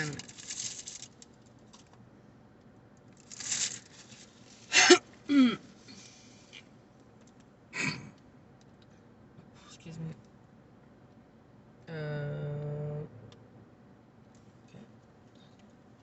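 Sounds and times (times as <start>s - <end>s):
person hiccuping: 4.7s - 5.7s.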